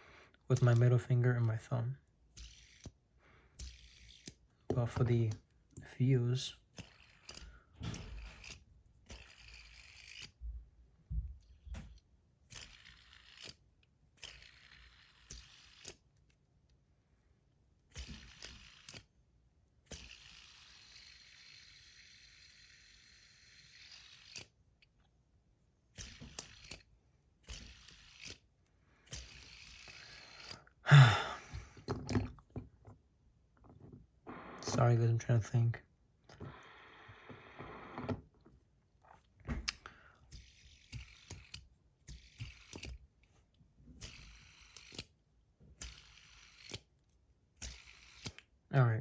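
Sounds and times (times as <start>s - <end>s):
fidget spinner clicks and scrapes: 0.5s - 10.4s, 12.0s - 16.4s, 17.8s - 19.2s, 19.8s - 25.0s, 25.9s - 30.8s, 39.7s - 48.6s
fidget spinner whirring: 2.3s - 4.4s, 6.6s - 10.4s, 12.4s - 16.3s, 17.8s - 19.2s, 19.8s - 24.6s, 25.9s - 30.8s, 39.7s - 43.1s, 43.9s - 45.2s, 45.8s - 47.0s, 47.6s - 48.5s
breathy sound: 30.8s - 31.9s.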